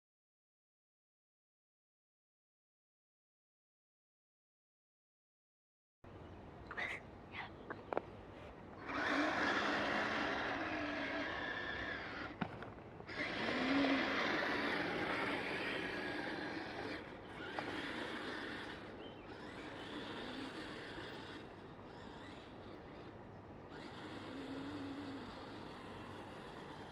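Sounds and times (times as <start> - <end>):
electric motor whining: 8.8 - 26.9.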